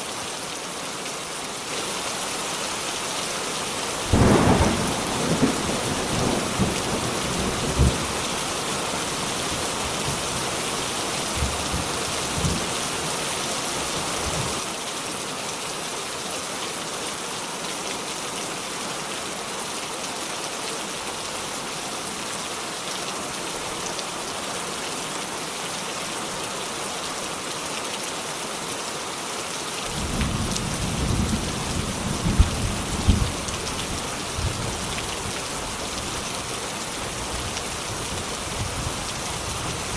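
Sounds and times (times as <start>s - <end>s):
steady rain: 0.0s - 39.9s
thunder rumbling: 4.1s - 8.2s.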